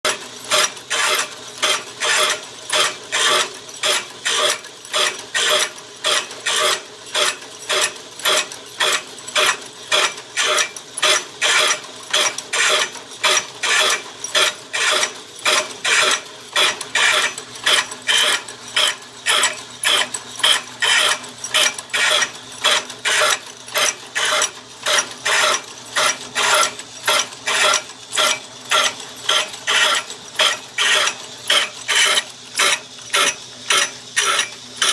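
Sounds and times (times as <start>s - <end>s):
grinding strokes on metal teeth: 0.1s - 34.9s
steady motor hum: 0.1s - 34.9s.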